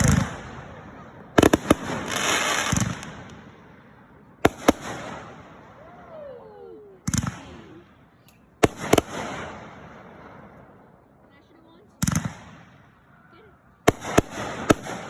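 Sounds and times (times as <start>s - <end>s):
fireworks bangs: 0.0s - 15.0s
fireworks crackling hiss: 1.4s - 3.1s.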